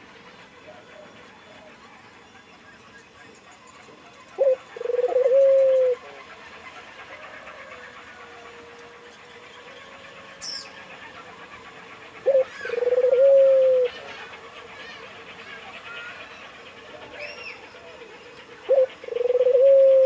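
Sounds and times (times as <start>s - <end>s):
dove cooing: 4.3s - 6.2s, 12.1s - 16.2s, 16.9s - 20.0s.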